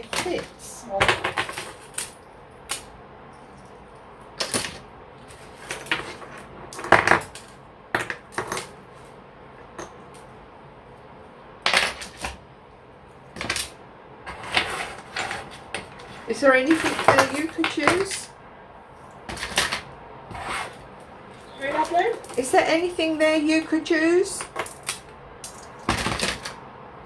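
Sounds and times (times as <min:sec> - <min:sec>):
jewellery clinking into plastic box: 0:04.4 - 0:08.8, 0:11.7 - 0:12.4, 0:13.4 - 0:18.3, 0:19.3 - 0:19.9, 0:21.4 - 0:26.6.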